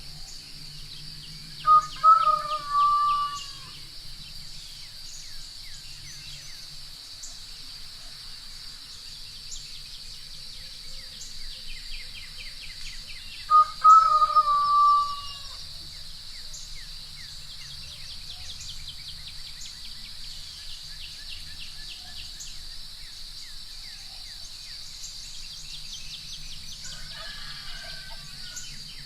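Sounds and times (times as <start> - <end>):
rooster crowing: 1.6 - 3.8, 13.5 - 15.6, 26.8 - 29.0
small birds chirping: 8.9 - 27.4.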